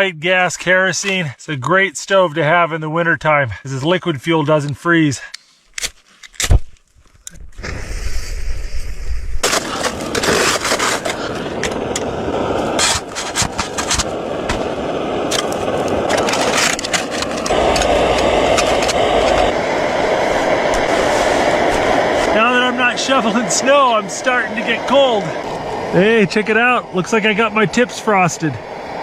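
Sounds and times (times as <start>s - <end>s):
sharp clicks and scrapes: 5.3s - 7.7s, 9.4s - 12.1s, 12.7s - 14.7s, 15.3s - 19.5s
camp stove flame rushing: 7.5s - 29.0s.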